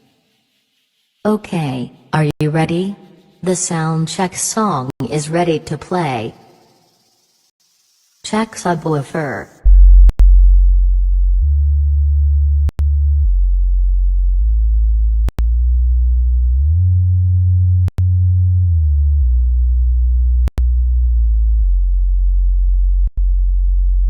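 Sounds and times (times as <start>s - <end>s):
deep test tone hum: 9.6s - 24.0s.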